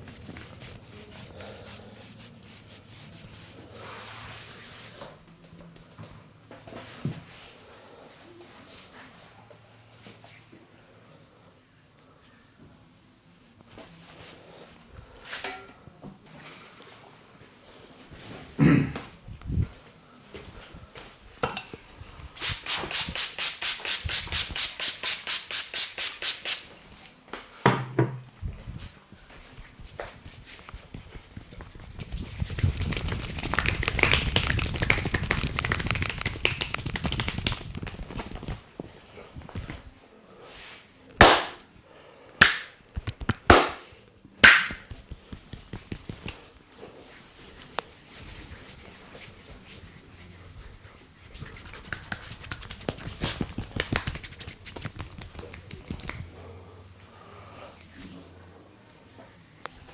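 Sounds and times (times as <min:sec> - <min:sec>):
hands rubbing on back: 0:22.4 - 0:26.8, 0:29.5 - 0:38.7, 0:42.4 - 0:56.4.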